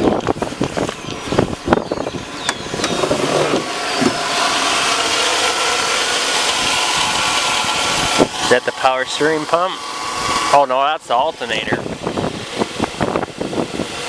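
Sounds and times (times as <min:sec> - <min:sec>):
car engine idling: 0:00.0 - 0:14.0
engine knocks: 0:00.0 - 0:14.0
engine whir: 0:00.0 - 0:14.0.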